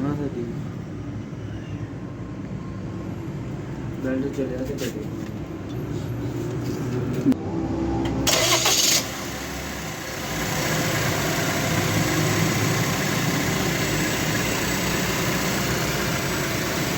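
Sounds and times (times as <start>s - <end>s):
car engine starting: 7.3s - 16.9s
car engine running: 8.0s - 16.9s.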